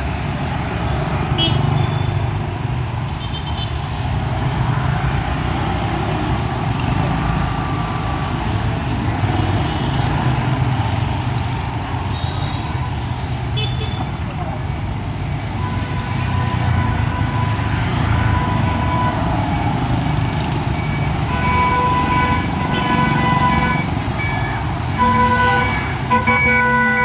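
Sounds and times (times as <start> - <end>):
rumble of passing vehicles: 0.0 - 27.0.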